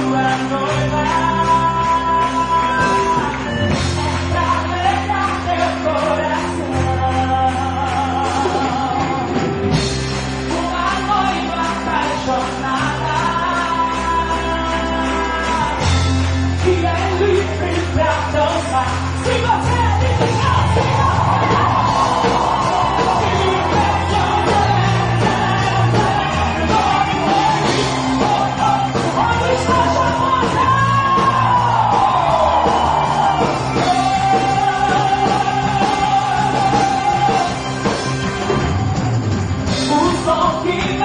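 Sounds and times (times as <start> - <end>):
band playing rock music: 0.0 - 41.0
voices singing held notes: 20.1 - 37.9.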